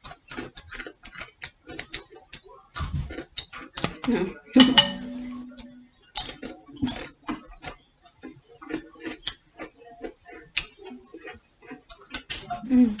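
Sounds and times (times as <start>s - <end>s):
crunchy snacks being chewed: 0.0s - 3.9s, 6.2s - 12.4s.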